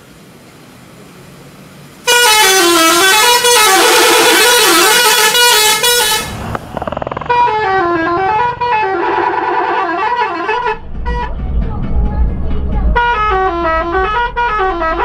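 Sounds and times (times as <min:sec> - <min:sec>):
musical bus horn tune: 0:02.0 - 0:06.6, 0:07.3 - 0:11.3, 0:12.9 - 0:15.0
low rumble: 0:06.3 - 0:15.0.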